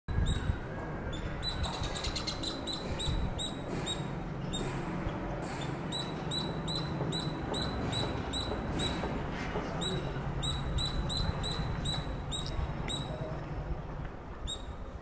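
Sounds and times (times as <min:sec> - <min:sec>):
squirrel chirping: 0:05.9 - 0:09.1, 0:09.8 - 0:13.1.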